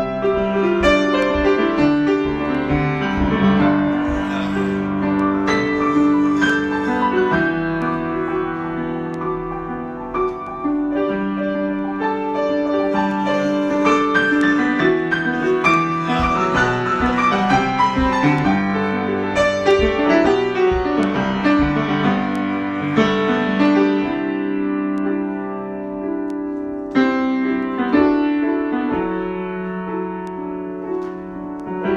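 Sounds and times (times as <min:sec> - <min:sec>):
solo piano improvisation: 0:00.0 - 0:31.9.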